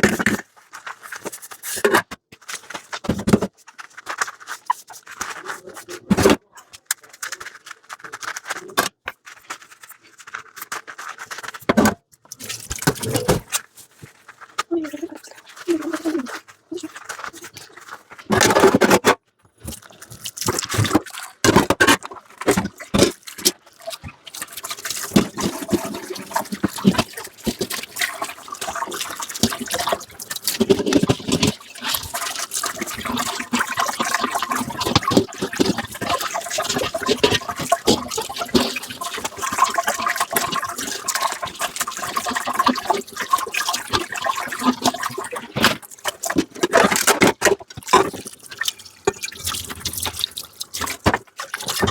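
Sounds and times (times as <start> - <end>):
tap water splashing on dishes: 19.7 - 51.9.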